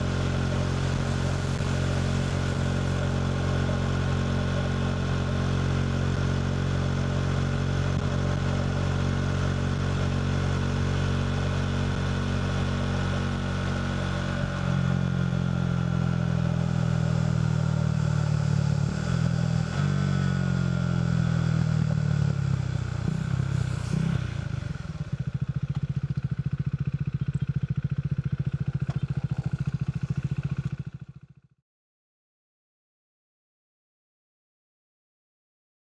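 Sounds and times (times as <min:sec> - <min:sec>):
motorcycle engine running: 0:00.0 - 0:31.5
engine clatters: 0:25.3 - 0:30.8.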